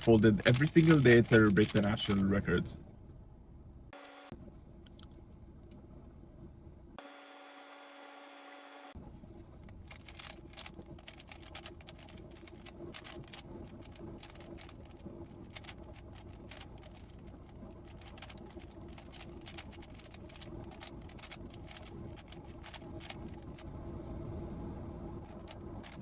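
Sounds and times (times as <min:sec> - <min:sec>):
puzzle cube clicking as turned: 0:00.4 - 0:02.1, 0:09.9 - 0:23.7.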